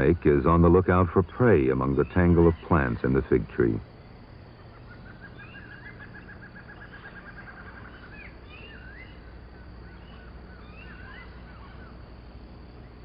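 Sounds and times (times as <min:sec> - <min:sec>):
low steady hum: 0:00.0 - 0:13.0
rapid high animal trill: 0:01.6 - 0:03.9
short chirping calls: 0:01.8 - 0:12.1.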